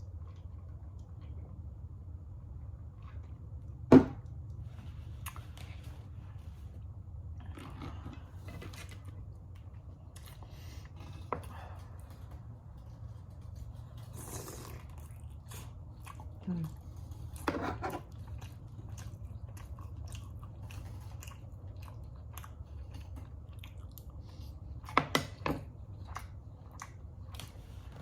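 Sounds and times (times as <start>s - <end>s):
steady low hum: 0.0s - 28.0s
person chewing: 7.4s - 28.0s.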